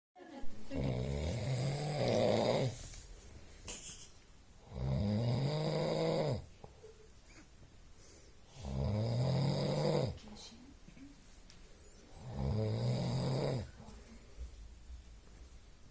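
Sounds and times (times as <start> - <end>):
pitched snoring: 0.7 - 2.8, 4.6 - 6.5, 8.5 - 10.2, 12.1 - 13.8.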